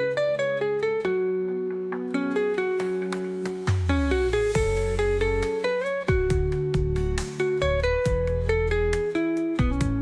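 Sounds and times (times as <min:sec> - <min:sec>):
plucked acoustic guitar melody: 0:00.0 - 0:10.0.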